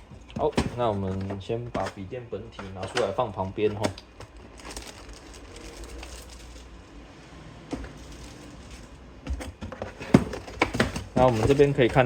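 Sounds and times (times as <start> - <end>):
cardboard box rustling: 2.6 - 6.8, 7.7 - 12.0.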